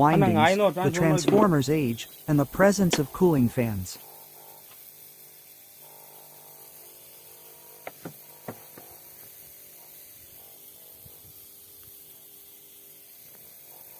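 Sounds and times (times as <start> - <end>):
transformer humming: 0.0 - 4.0.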